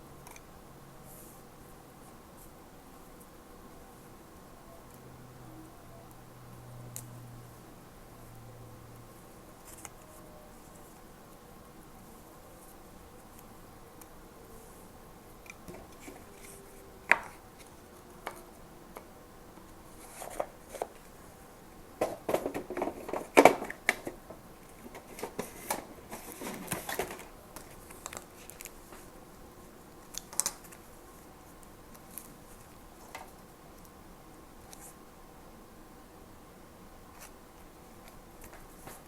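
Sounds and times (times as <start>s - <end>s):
paper rustling and tapping: 22.0s - 29.1s.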